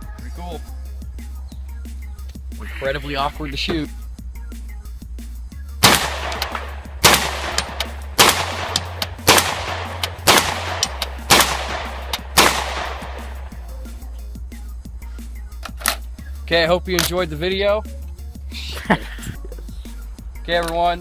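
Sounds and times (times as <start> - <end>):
background music: 0.0 - 21.0
gunshots: 5.8 - 13.6.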